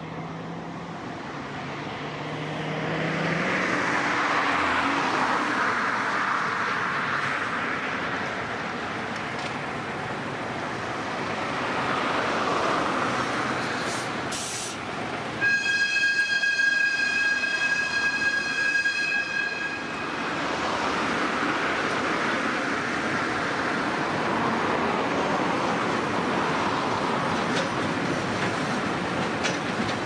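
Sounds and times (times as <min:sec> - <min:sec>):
train rumbling: 0:06.2 - 0:30.0
high train horn: 0:15.4 - 0:20.3.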